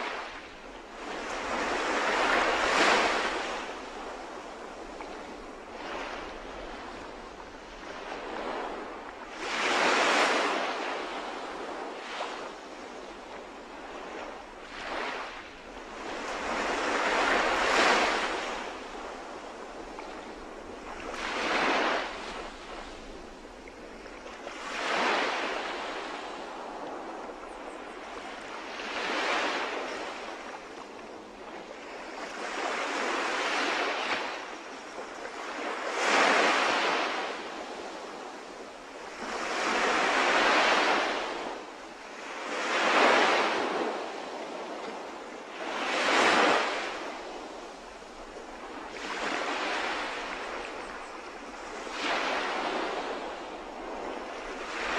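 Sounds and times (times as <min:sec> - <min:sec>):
sea waves breaking on shore: 0:00.0 - 0:54.9.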